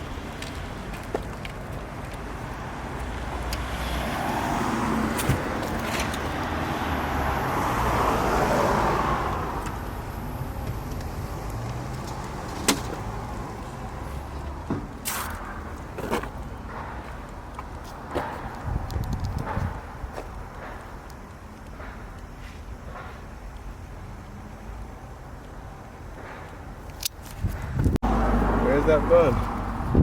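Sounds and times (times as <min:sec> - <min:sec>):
vehicle passing: 0:02.2 - 0:14.7, 0:27.6 - 0:30.0.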